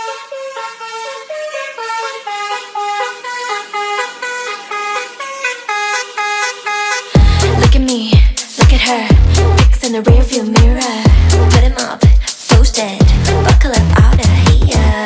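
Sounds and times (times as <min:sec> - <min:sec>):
car horn playing a tune: 0:00.0 - 0:07.2
dance beat with bass drums: 0:03.6 - 0:15.0.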